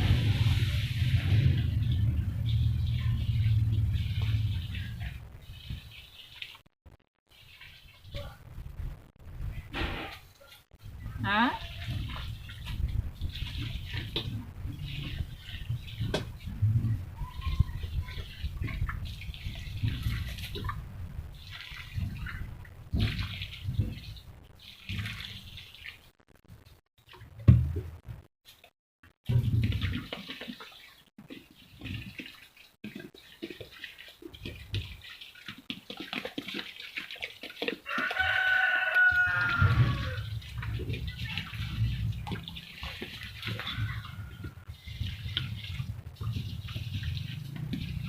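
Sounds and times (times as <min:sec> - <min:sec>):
water pouring onto soil: 0:00.0 - 0:06.6, 0:11.3 - 0:24.0, 0:29.5 - 0:48.0
rooster crowing: 0:37.9 - 0:40.3.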